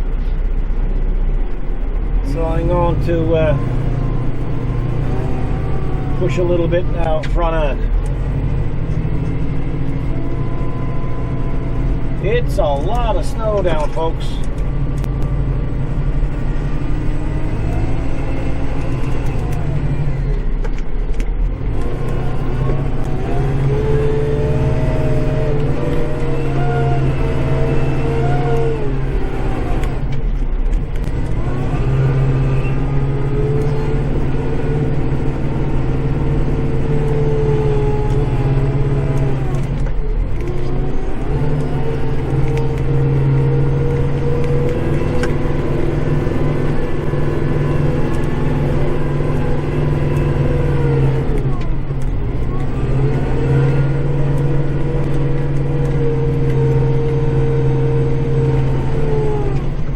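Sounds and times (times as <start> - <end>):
tractor diesel engine running: 0.0 - 59.9.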